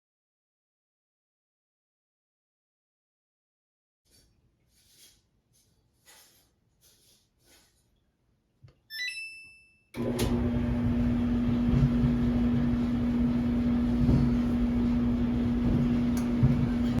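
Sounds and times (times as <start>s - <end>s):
dryer running with low hum: 10.0s - 17.0s.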